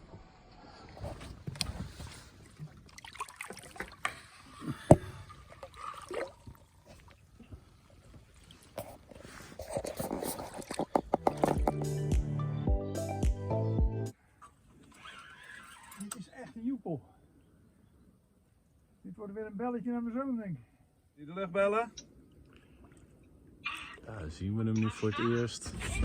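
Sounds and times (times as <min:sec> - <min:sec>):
water splashing and sloshing: 0:00.0 - 0:12.0, 0:14.2 - 0:16.2, 0:22.2 - 0:24.1
knocks and clicks: 0:10.9 - 0:12.3
music: 0:11.3 - 0:14.1.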